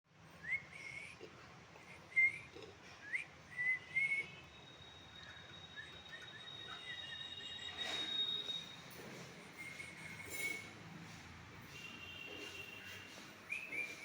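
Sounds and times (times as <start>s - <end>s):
bird whistled chirps: 3.6s - 8.7s.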